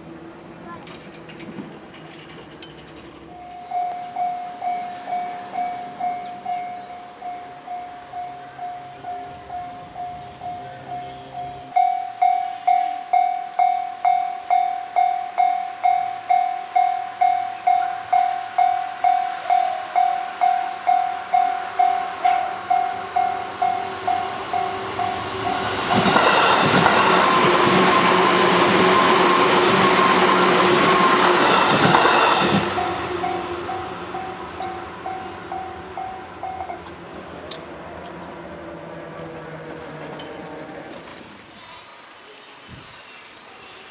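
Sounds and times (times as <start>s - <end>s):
electric train passing: 0.0s - 43.9s
wheels clattering over rail joints: 0.5s - 10.9s, 21.8s - 41.9s
level-crossing electronic bell: 3.3s - 28.2s, 29.0s - 36.9s.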